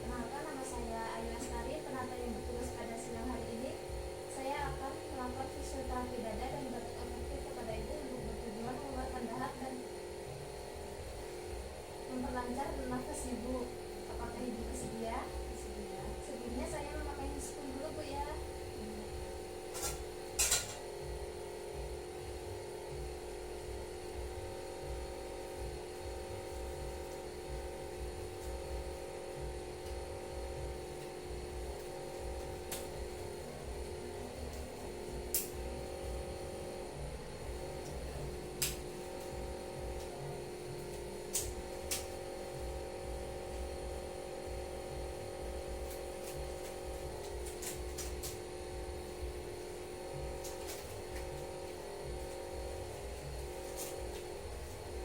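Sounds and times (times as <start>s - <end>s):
machine hum with pitched tones: 0.0s - 55.0s
latex gloves snapping: 35.3s - 35.6s, 38.6s - 38.9s, 41.3s - 42.2s.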